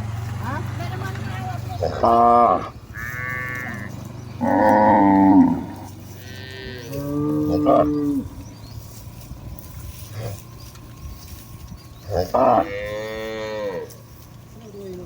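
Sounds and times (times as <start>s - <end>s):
cattle mooing: 1.8s - 8.3s, 12.1s - 14.0s.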